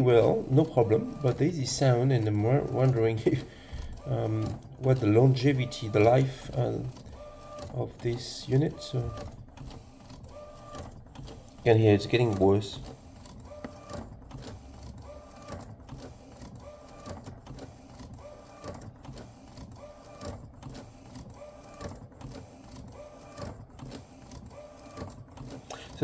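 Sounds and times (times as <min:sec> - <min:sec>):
printer carriage motor whine: 0:00.0 - 0:26.0
printer grinding noise: 0:00.0 - 0:26.0.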